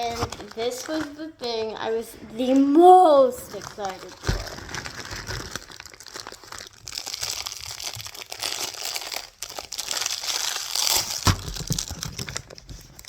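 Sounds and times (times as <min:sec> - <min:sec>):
packaging crinkling and tearing: 0:00.0 - 0:01.8, 0:03.4 - 0:13.0
sharp thump: 0:11.2 - 0:11.9.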